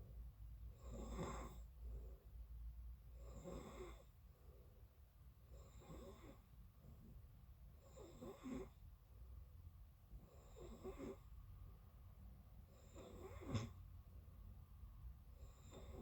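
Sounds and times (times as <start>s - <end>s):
person snoring faintly: 15.4s - 16.0s.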